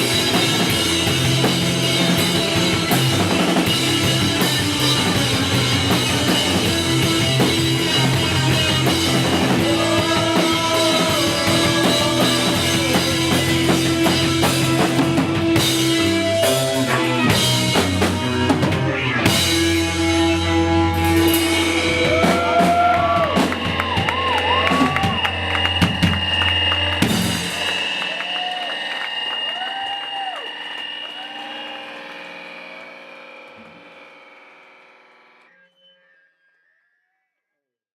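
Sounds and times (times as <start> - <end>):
sliding wavering lead guitar line: 0.0 - 27.8
bass guitar: 0.0 - 28.8
drum kit: 0.0 - 31.4.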